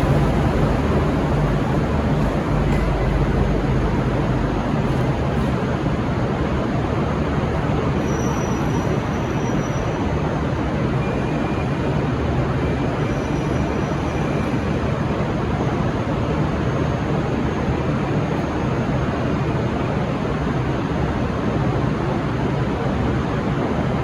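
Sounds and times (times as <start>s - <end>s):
diesel railcar drone: 0.0s - 24.0s
wheel and rail rumble: 0.0s - 24.0s.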